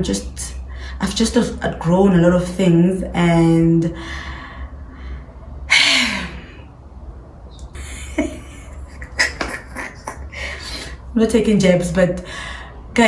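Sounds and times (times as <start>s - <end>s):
steady low hum: 0.0s - 13.0s
woman breathing: 0.6s - 1.0s, 3.9s - 6.7s, 10.3s - 11.1s, 12.2s - 13.0s.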